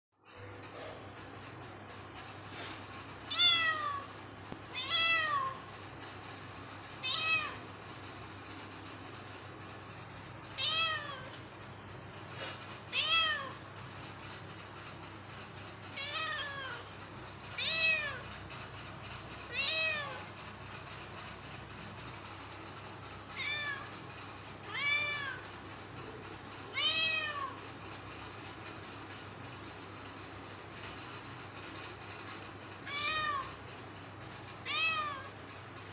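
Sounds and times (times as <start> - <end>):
cat meowing: 3.3 - 4.1, 4.7 - 5.7, 7.0 - 7.6, 10.6 - 11.3, 12.9 - 13.6, 23.4 - 23.9, 24.7 - 25.4, 32.8 - 33.5, 34.6 - 35.3.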